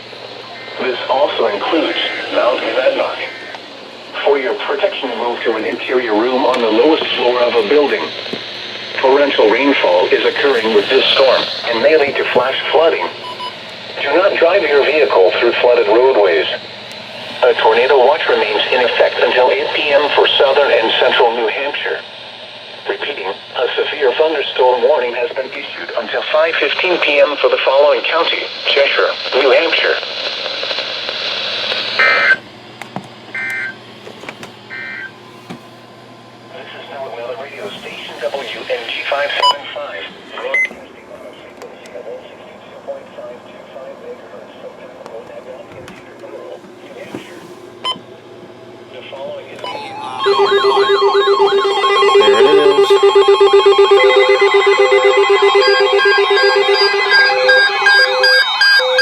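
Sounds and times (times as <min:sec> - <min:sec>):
radio hiss: 0:00.0 - 0:32.4, 0:33.9 - 0:47.9, 0:48.8 - 0:53.1
buzzy digital data tones: 0:00.3 - 0:22.0, 0:49.6 - 0:59.0
alarm beeps: 0:10.2 - 0:13.6, 0:33.3 - 0:33.8, 0:34.7 - 0:35.2, 0:37.6 - 0:39.7, 0:40.4 - 0:40.8, 0:49.6 - 0:59.0
warbling siren-like sweeps: 0:49.6 - 0:59.0.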